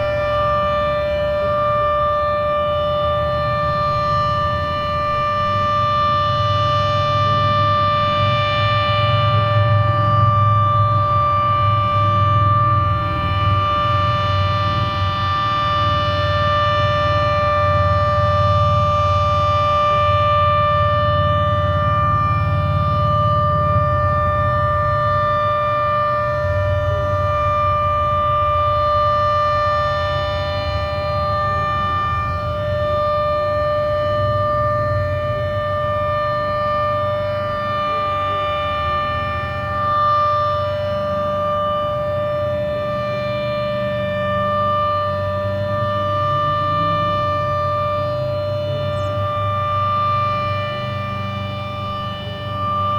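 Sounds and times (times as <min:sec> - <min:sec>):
steady warning siren tone: 0:00.0 - 0:52.9.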